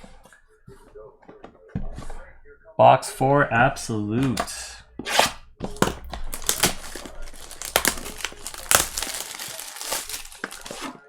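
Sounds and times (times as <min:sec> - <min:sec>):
plastic wrapping torn and crinkled: 0:05.1 - 0:11.0.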